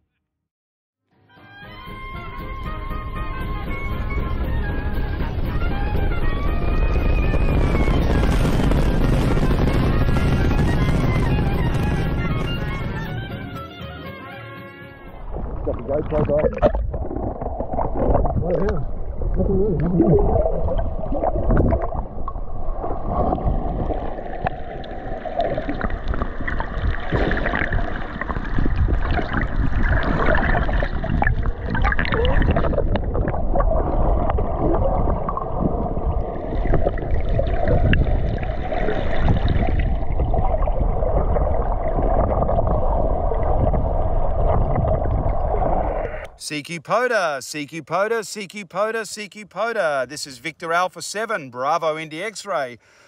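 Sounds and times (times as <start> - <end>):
water gurgling and sloshing: 2.2 - 13.4, 14.9 - 46.4
crackling rush: 4.4 - 13.6
low rumble: 15.2 - 46.4.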